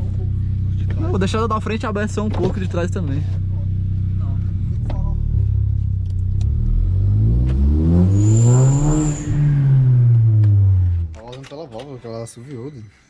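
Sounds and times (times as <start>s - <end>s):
turbo car engine accelerating: 0.0s - 11.3s
high turbo whistle: 7.4s - 11.0s.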